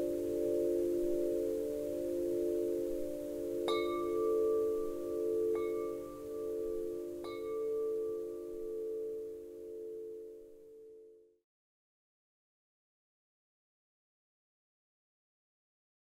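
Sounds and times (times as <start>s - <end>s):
wind chimes ringing: 0.0s - 11.0s.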